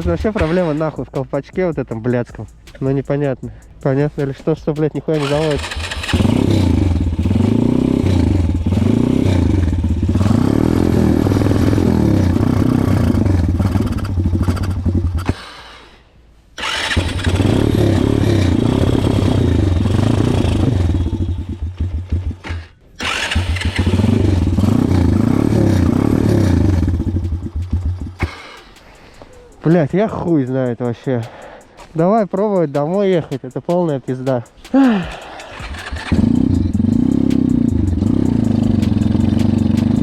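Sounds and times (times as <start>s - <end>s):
small motorcycle engine revving unevenly: 5.2s - 15.4s, 16.6s - 28.2s, 35.6s - 40.0s.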